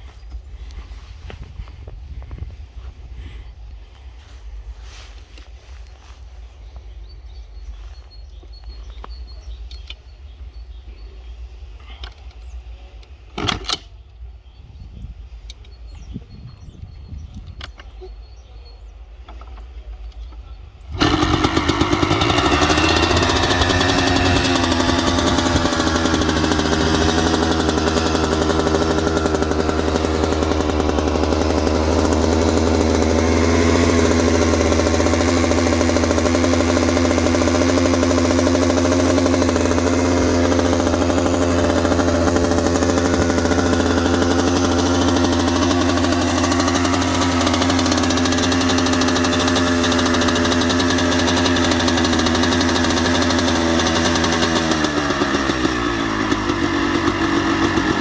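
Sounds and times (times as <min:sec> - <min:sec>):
two-stroke engine idling: 0:20.9 - 0:58.0.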